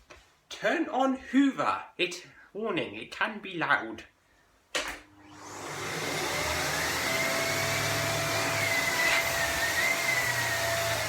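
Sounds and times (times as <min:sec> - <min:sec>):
vacuum cleaner running: 0:05.1 - 0:11.0.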